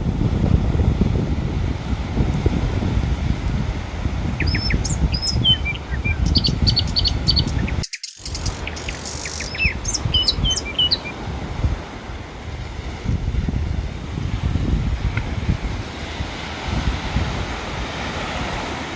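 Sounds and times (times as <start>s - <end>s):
surf: 0.0s - 18.9s
wind: 0.0s - 18.9s
small birds chirping: 4.4s - 11.2s.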